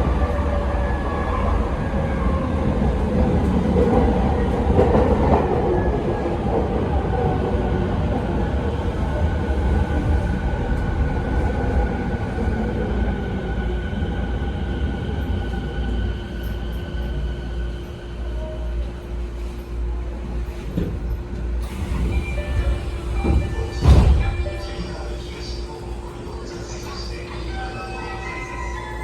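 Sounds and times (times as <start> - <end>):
train wheels and motors rumbling: 0.0 - 27.5.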